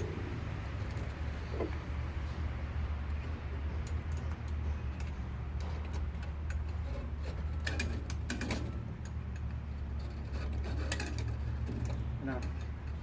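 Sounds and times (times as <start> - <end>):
metallic hardware clicks: 3.1 - 13.0.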